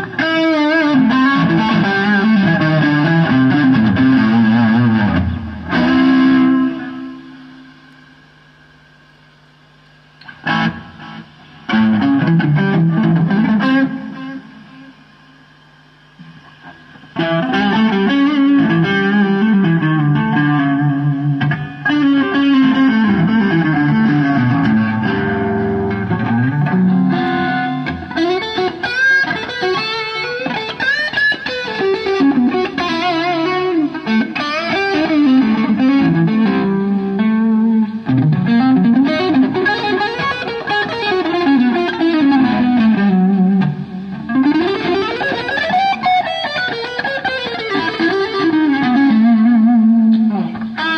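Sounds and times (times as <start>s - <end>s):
distorted electric guitar lead: 0.0s - 50.9s.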